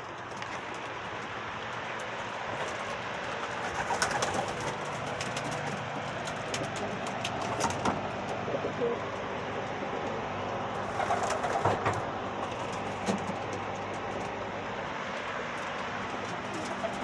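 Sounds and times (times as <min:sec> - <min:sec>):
pigeons cooing: 0:02.7 - 0:10.0, 0:10.7 - 0:13.7, 0:16.2 - 0:17.0.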